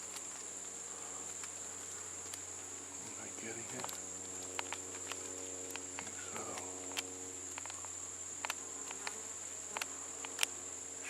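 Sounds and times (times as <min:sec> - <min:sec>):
bees buzzing: 0:00.0 - 0:11.0
high-pitched insect trill: 0:00.0 - 0:11.0
sharp clicks: 0:03.6 - 0:10.5.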